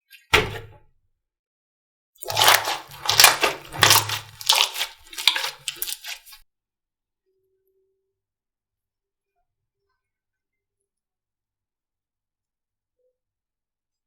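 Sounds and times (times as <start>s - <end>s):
sharp slime pop: 2.2s - 6.4s
slime crackling and popping: 2.2s - 6.4s.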